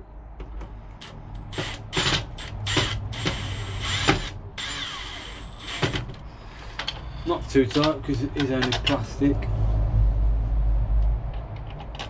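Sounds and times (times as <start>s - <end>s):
power drill whining: 1.0s - 6.1s.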